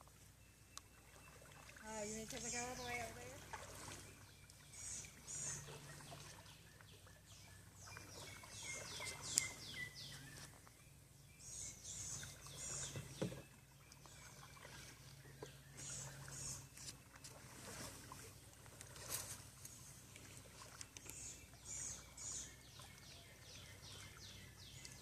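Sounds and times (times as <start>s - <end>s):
bird singing falling chirps: 4.4s - 14.4s.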